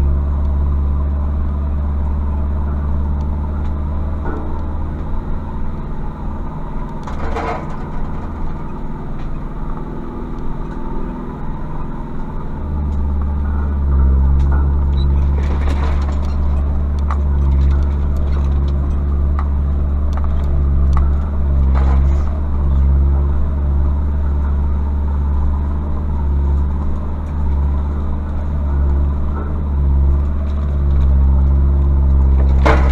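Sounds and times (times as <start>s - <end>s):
diesel pickup engine running: 0.0s - 32.9s.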